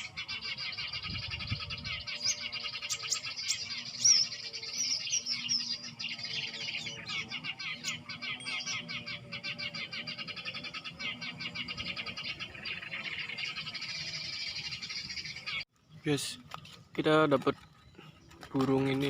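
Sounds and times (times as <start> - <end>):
small songbirds twittering: 0.0 - 19.0.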